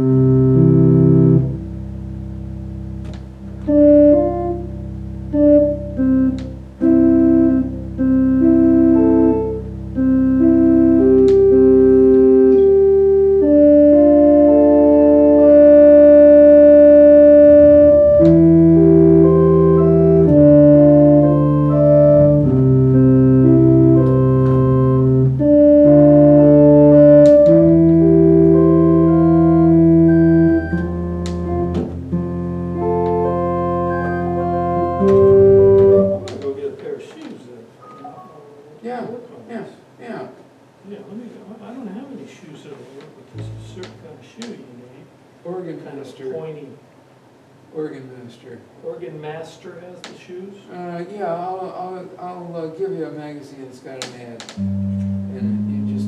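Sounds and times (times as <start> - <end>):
electronic organ chords and melody: 0.0 - 36.8, 43.3 - 44.1, 54.6 - 56.0
low organ pedal bass: 0.0 - 36.8, 43.4 - 44.2, 54.5 - 56.0.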